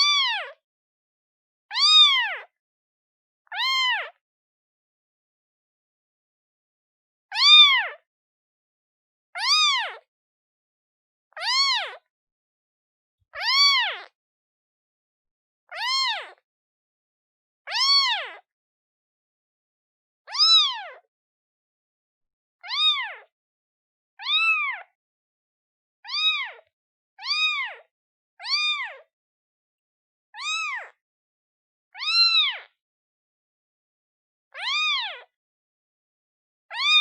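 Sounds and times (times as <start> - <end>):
kitten meowing: 0.0 - 0.5, 1.7 - 2.4, 3.5 - 4.2, 7.3 - 7.9, 9.4 - 10.0, 11.4 - 12.0, 13.4 - 14.1, 15.7 - 16.4, 17.7 - 18.4, 20.3 - 21.0, 22.6 - 23.2, 24.2 - 24.9, 26.0 - 26.6, 27.2 - 27.8, 28.4 - 29.0, 30.4 - 30.9, 32.0 - 32.7, 34.6 - 35.3, 36.7 - 37.0.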